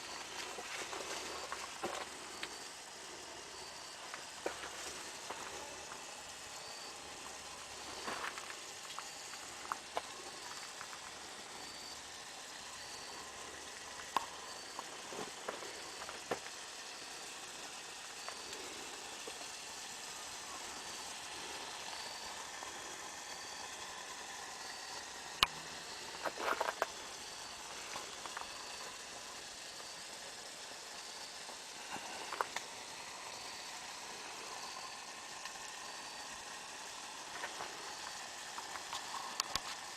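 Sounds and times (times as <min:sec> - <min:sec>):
food sizzling in hot oil: 0:00.0 - 0:39.9
oil popping and clicking: 0:13.5 - 0:16.6, 0:31.5 - 0:33.1, 0:37.0 - 0:39.9.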